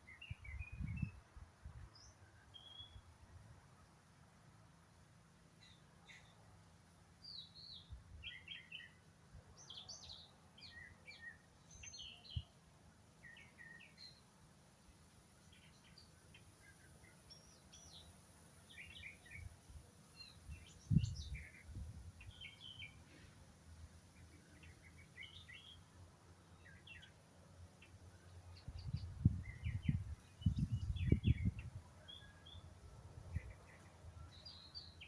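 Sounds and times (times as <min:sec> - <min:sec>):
birds chirping and singing: 0:15.4 - 0:19.5, 0:20.1 - 0:23.1, 0:24.2 - 0:25.9, 0:26.5 - 0:27.2, 0:27.8 - 0:35.0.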